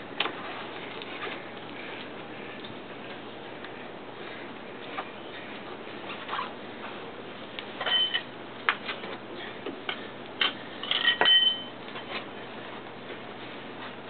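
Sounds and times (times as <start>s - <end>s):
metal tools clinking and knocking: 7.8s - 8.3s, 10.8s - 11.7s.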